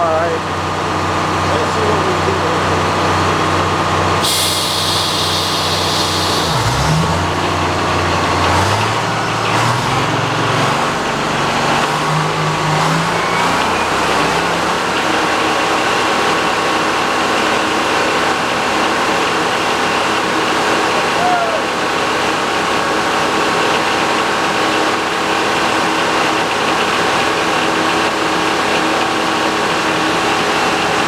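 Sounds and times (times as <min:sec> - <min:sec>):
engine running: 0:00.0 - 0:31.0
circular saw blade spinning: 0:04.2 - 0:15.0.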